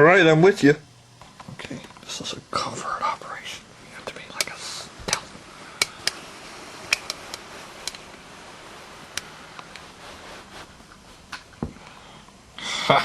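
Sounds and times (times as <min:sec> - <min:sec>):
faint steady hiss: 0:00.0 - 0:13.0
light clicks and taps: 0:04.0 - 0:05.2.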